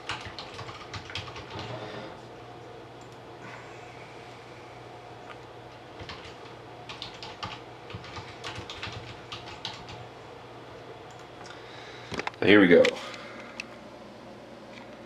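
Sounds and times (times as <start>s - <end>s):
typing on keyboard: 0.0s - 1.8s, 6.0s - 10.0s
low steady hum: 0.0s - 15.0s.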